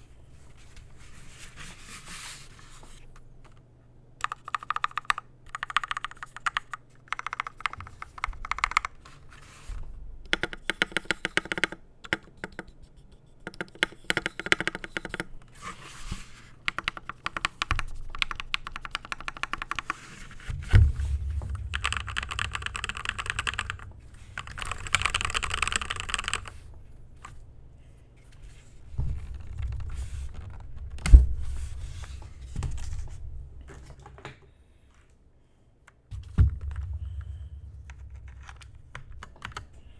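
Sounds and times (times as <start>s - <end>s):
mechanical keyboard typing: 4.2s - 9.0s, 10.3s - 12.8s, 13.4s - 15.3s, 16.7s - 20.1s, 21.7s - 26.7s, 38.3s - 39.7s
heavy keystroke thumps: 20.5s - 26.9s, 36.1s - 39.7s.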